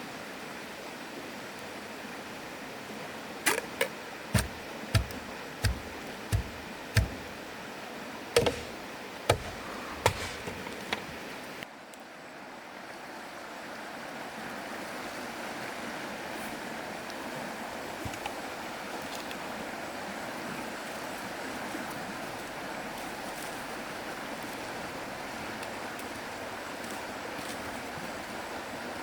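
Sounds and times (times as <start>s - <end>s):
sharp knocks with dull thud: 4.4s - 7.4s, 8.4s - 11.1s
rushing river water: 12.6s - 29.0s.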